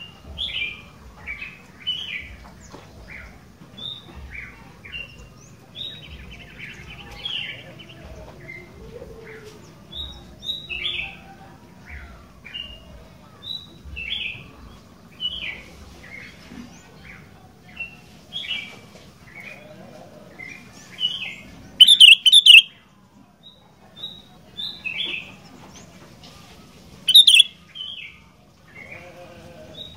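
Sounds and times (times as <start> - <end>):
harsh distorted bird calls: 21.0 - 22.7, 27.1 - 27.6
bird whistled phrases: 21.8 - 22.8, 27.1 - 27.6.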